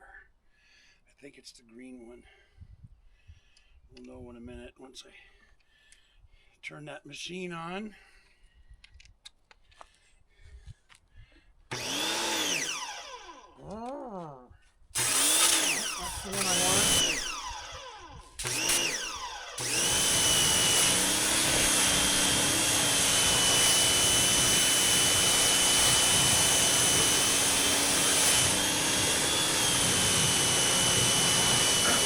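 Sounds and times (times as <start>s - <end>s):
pressure washer motor whining: 11.7s - 13.5s, 15.0s - 32.0s
pressure washer spray hiss: 15.0s - 17.2s.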